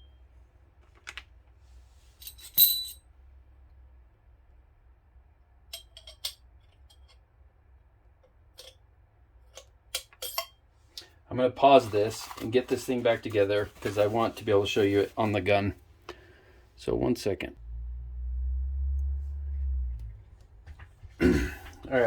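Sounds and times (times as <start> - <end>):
metal baffles clinking: 2.2 - 3.0, 9.9 - 10.6.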